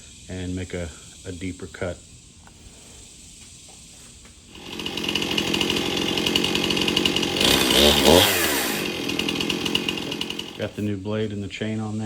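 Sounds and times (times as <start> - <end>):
chainsaw revving: 4.5 - 10.9.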